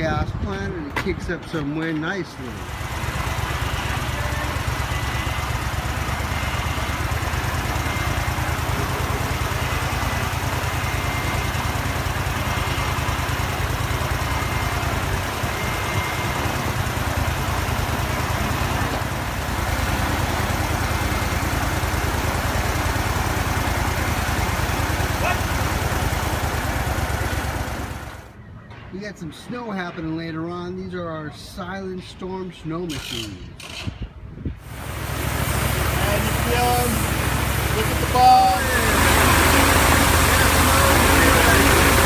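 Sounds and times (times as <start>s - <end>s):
engine chugging: 2.4s - 28.4s, 34.6s - 42.0s.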